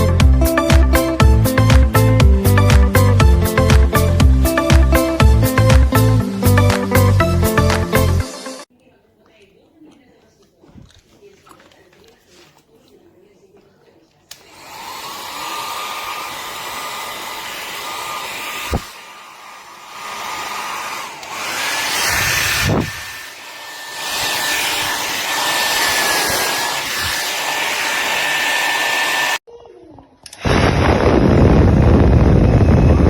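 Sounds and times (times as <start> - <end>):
hair dryer switch click: 14.3 - 15.1, 21.2 - 21.6
hair dryer blowing with whine: 14.3 - 29.4, 30.4 - 33.0.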